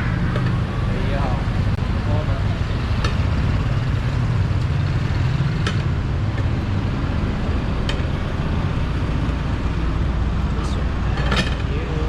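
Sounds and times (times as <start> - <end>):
road traffic rumble: 0.0 - 12.0.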